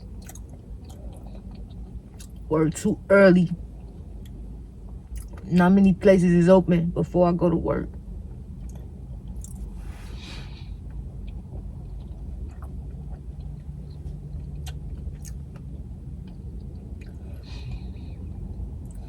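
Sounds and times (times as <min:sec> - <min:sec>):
person chewing food: 0:00.0 - 0:02.5, 0:05.1 - 0:05.5, 0:08.6 - 0:19.0
low hum: 0:00.0 - 0:19.0.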